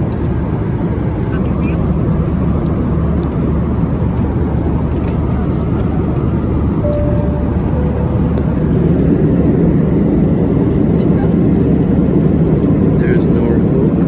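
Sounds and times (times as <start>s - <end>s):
airplane engine drone: 0.0s - 14.0s
short faint tone: 6.8s - 9.1s.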